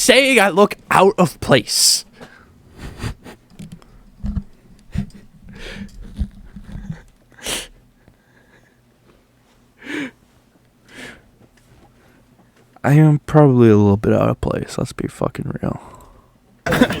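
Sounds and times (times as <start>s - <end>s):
man laughing through nose: 16.7s - 17.0s.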